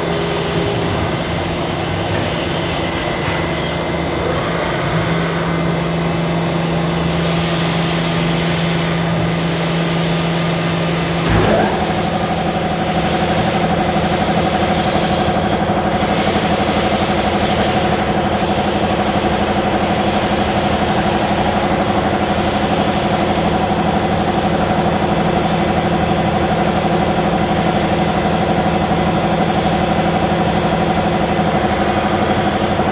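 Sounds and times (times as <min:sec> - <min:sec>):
machine humming: 0:00.0 - 0:32.9
high whine dropping in pitch: 0:04.0 - 0:16.0.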